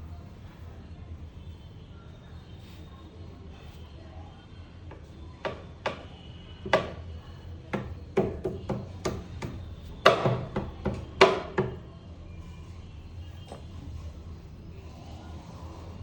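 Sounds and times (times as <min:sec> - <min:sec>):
sharp irregular knocks: 0:04.9 - 0:07.0, 0:07.7 - 0:11.8.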